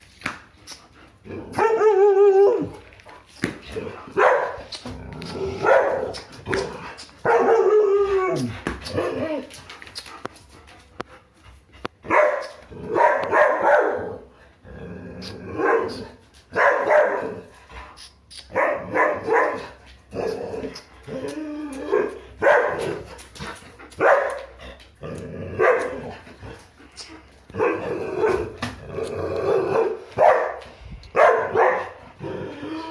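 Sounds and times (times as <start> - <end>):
dog barking and yowling: 1.4 - 2.8, 4.2 - 4.7, 5.5 - 9.5, 12.1 - 14.3, 15.5 - 17.5, 18.5 - 23.1, 25.5 - 26.2, 27.5 - 28.6, 29.4 - 30.6, 31.2 - 32.0.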